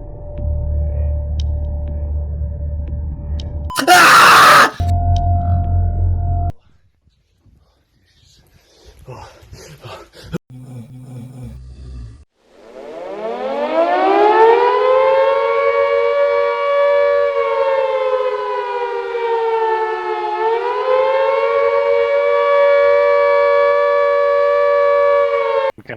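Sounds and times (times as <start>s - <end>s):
siren wailing: 13.0s - 16.6s.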